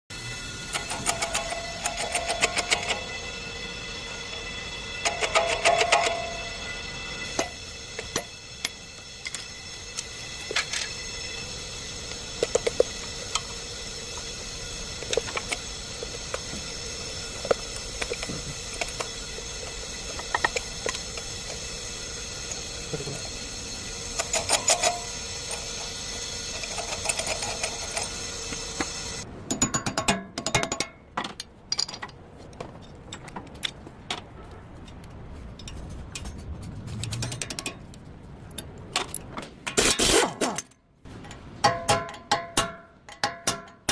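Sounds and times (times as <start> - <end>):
steady mechanical hum: 0.1 - 43.9
metallic clicks and knocks: 34.9 - 43.9.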